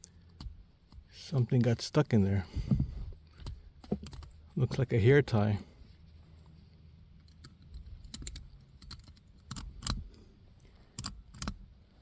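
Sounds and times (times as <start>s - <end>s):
metal pick clicking in buckle: 7.2s - 11.6s.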